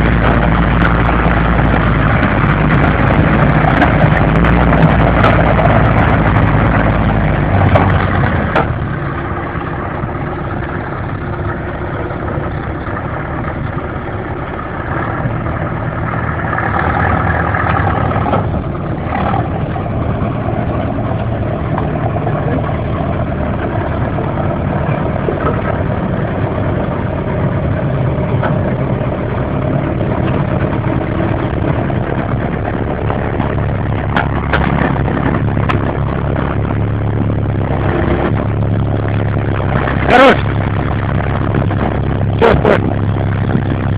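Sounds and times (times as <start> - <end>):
vehicle engine running: 0.0 - 43.9.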